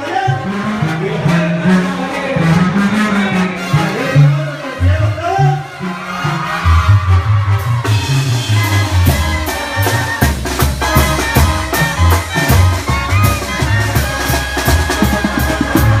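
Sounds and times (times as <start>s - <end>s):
brass band playing: 0.0s - 16.0s
low bass line: 0.2s - 16.0s
steady drum beat: 6.4s - 16.0s.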